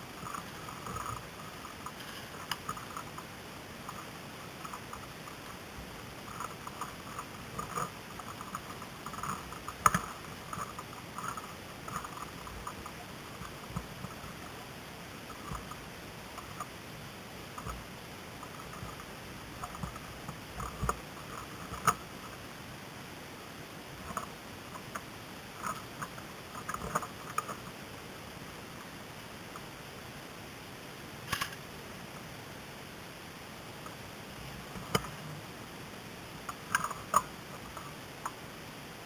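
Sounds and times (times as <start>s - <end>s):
rustling: 0.0s - 16.8s.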